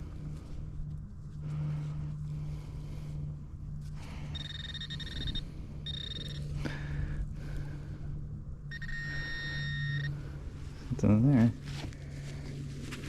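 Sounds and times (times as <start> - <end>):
steady low hum: 0.0 - 13.0
electronic alert tone: 4.4 - 6.4, 8.7 - 10.1.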